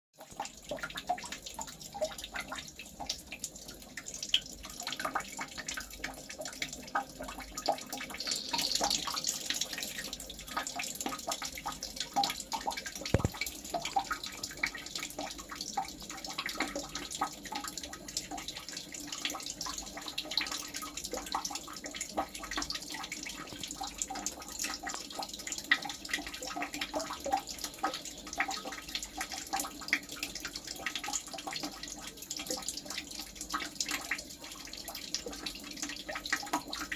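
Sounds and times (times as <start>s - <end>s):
water trickling and dripping: 0.2s - 36.9s
sharp click: 13.2s - 13.4s.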